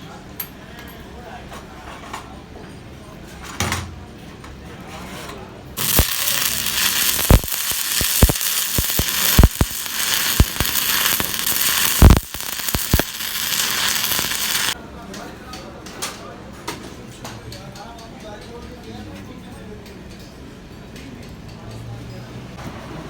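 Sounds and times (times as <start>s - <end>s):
electric arc welding crackling hiss: 5.8s - 14.8s.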